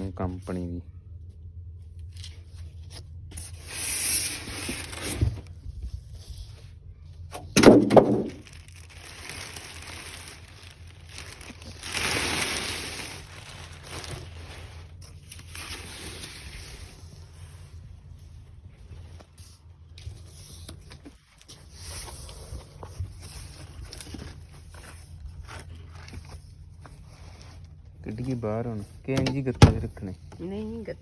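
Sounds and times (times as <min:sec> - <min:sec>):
cardboard scraping and rubbing: 0:02.7 - 0:06.6.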